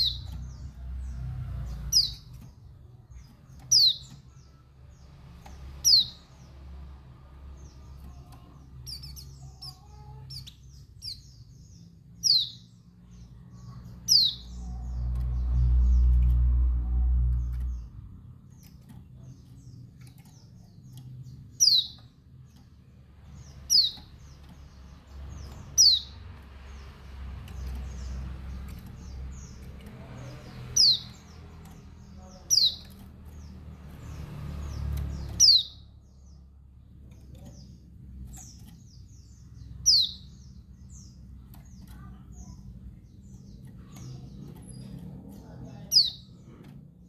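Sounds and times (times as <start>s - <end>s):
bird chirping: 0.0s - 47.0s.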